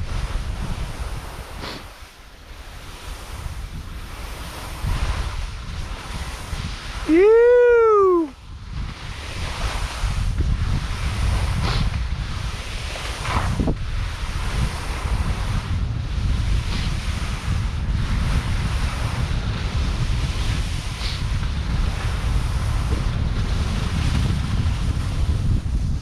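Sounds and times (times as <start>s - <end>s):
skis hissing on snow: 0.0s - 26.0s
wind buffeting microphone: 0.0s - 26.0s.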